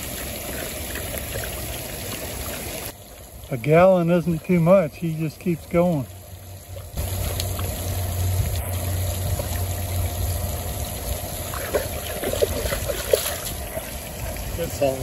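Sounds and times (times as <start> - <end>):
dog drinking: 0.0 - 2.8, 11.4 - 15.0
water trickling: 0.0 - 15.0
low rumble: 6.6 - 11.6
splashy sounds: 6.7 - 15.0.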